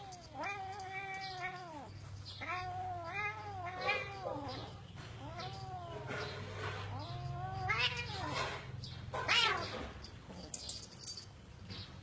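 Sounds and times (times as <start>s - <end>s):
cat yowling: 0.0s - 8.6s, 9.2s - 9.9s.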